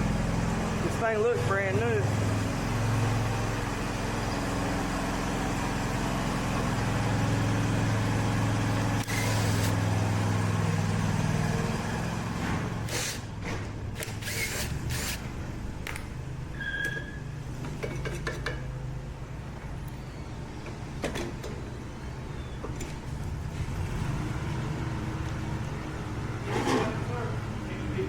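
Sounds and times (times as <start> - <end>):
push mower engine running: 0.0 - 13.0.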